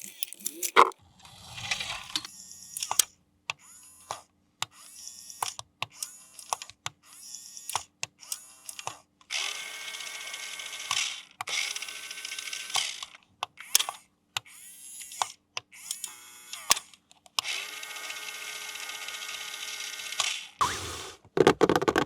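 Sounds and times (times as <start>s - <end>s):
plastic rasping: 21.2s - 22.0s.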